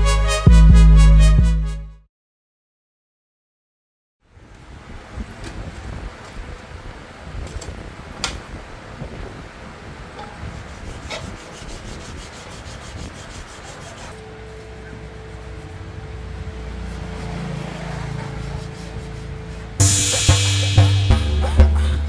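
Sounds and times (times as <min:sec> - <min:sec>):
abrasive rubbing strokes: 0:10.5 - 0:22.0
steady hum: 0:11.3 - 0:17.4.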